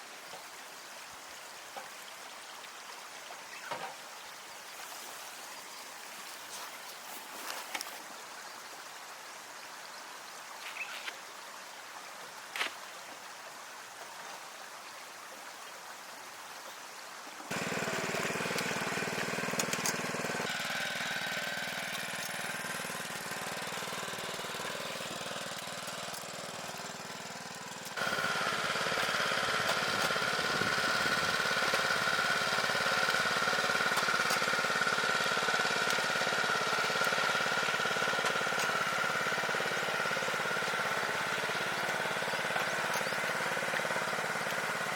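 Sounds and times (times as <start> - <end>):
small engine running: 17.5 - 44.9.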